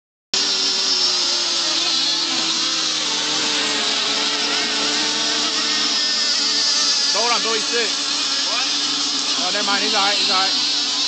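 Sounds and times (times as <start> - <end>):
boat motors whining: 0.6 - 11.0.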